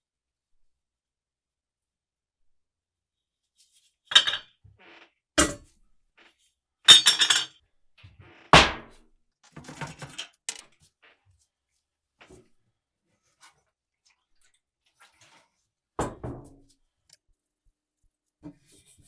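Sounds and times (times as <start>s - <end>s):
metal parts knocking and clinking: 4.1s - 4.4s, 6.9s - 7.5s, 9.6s - 10.6s.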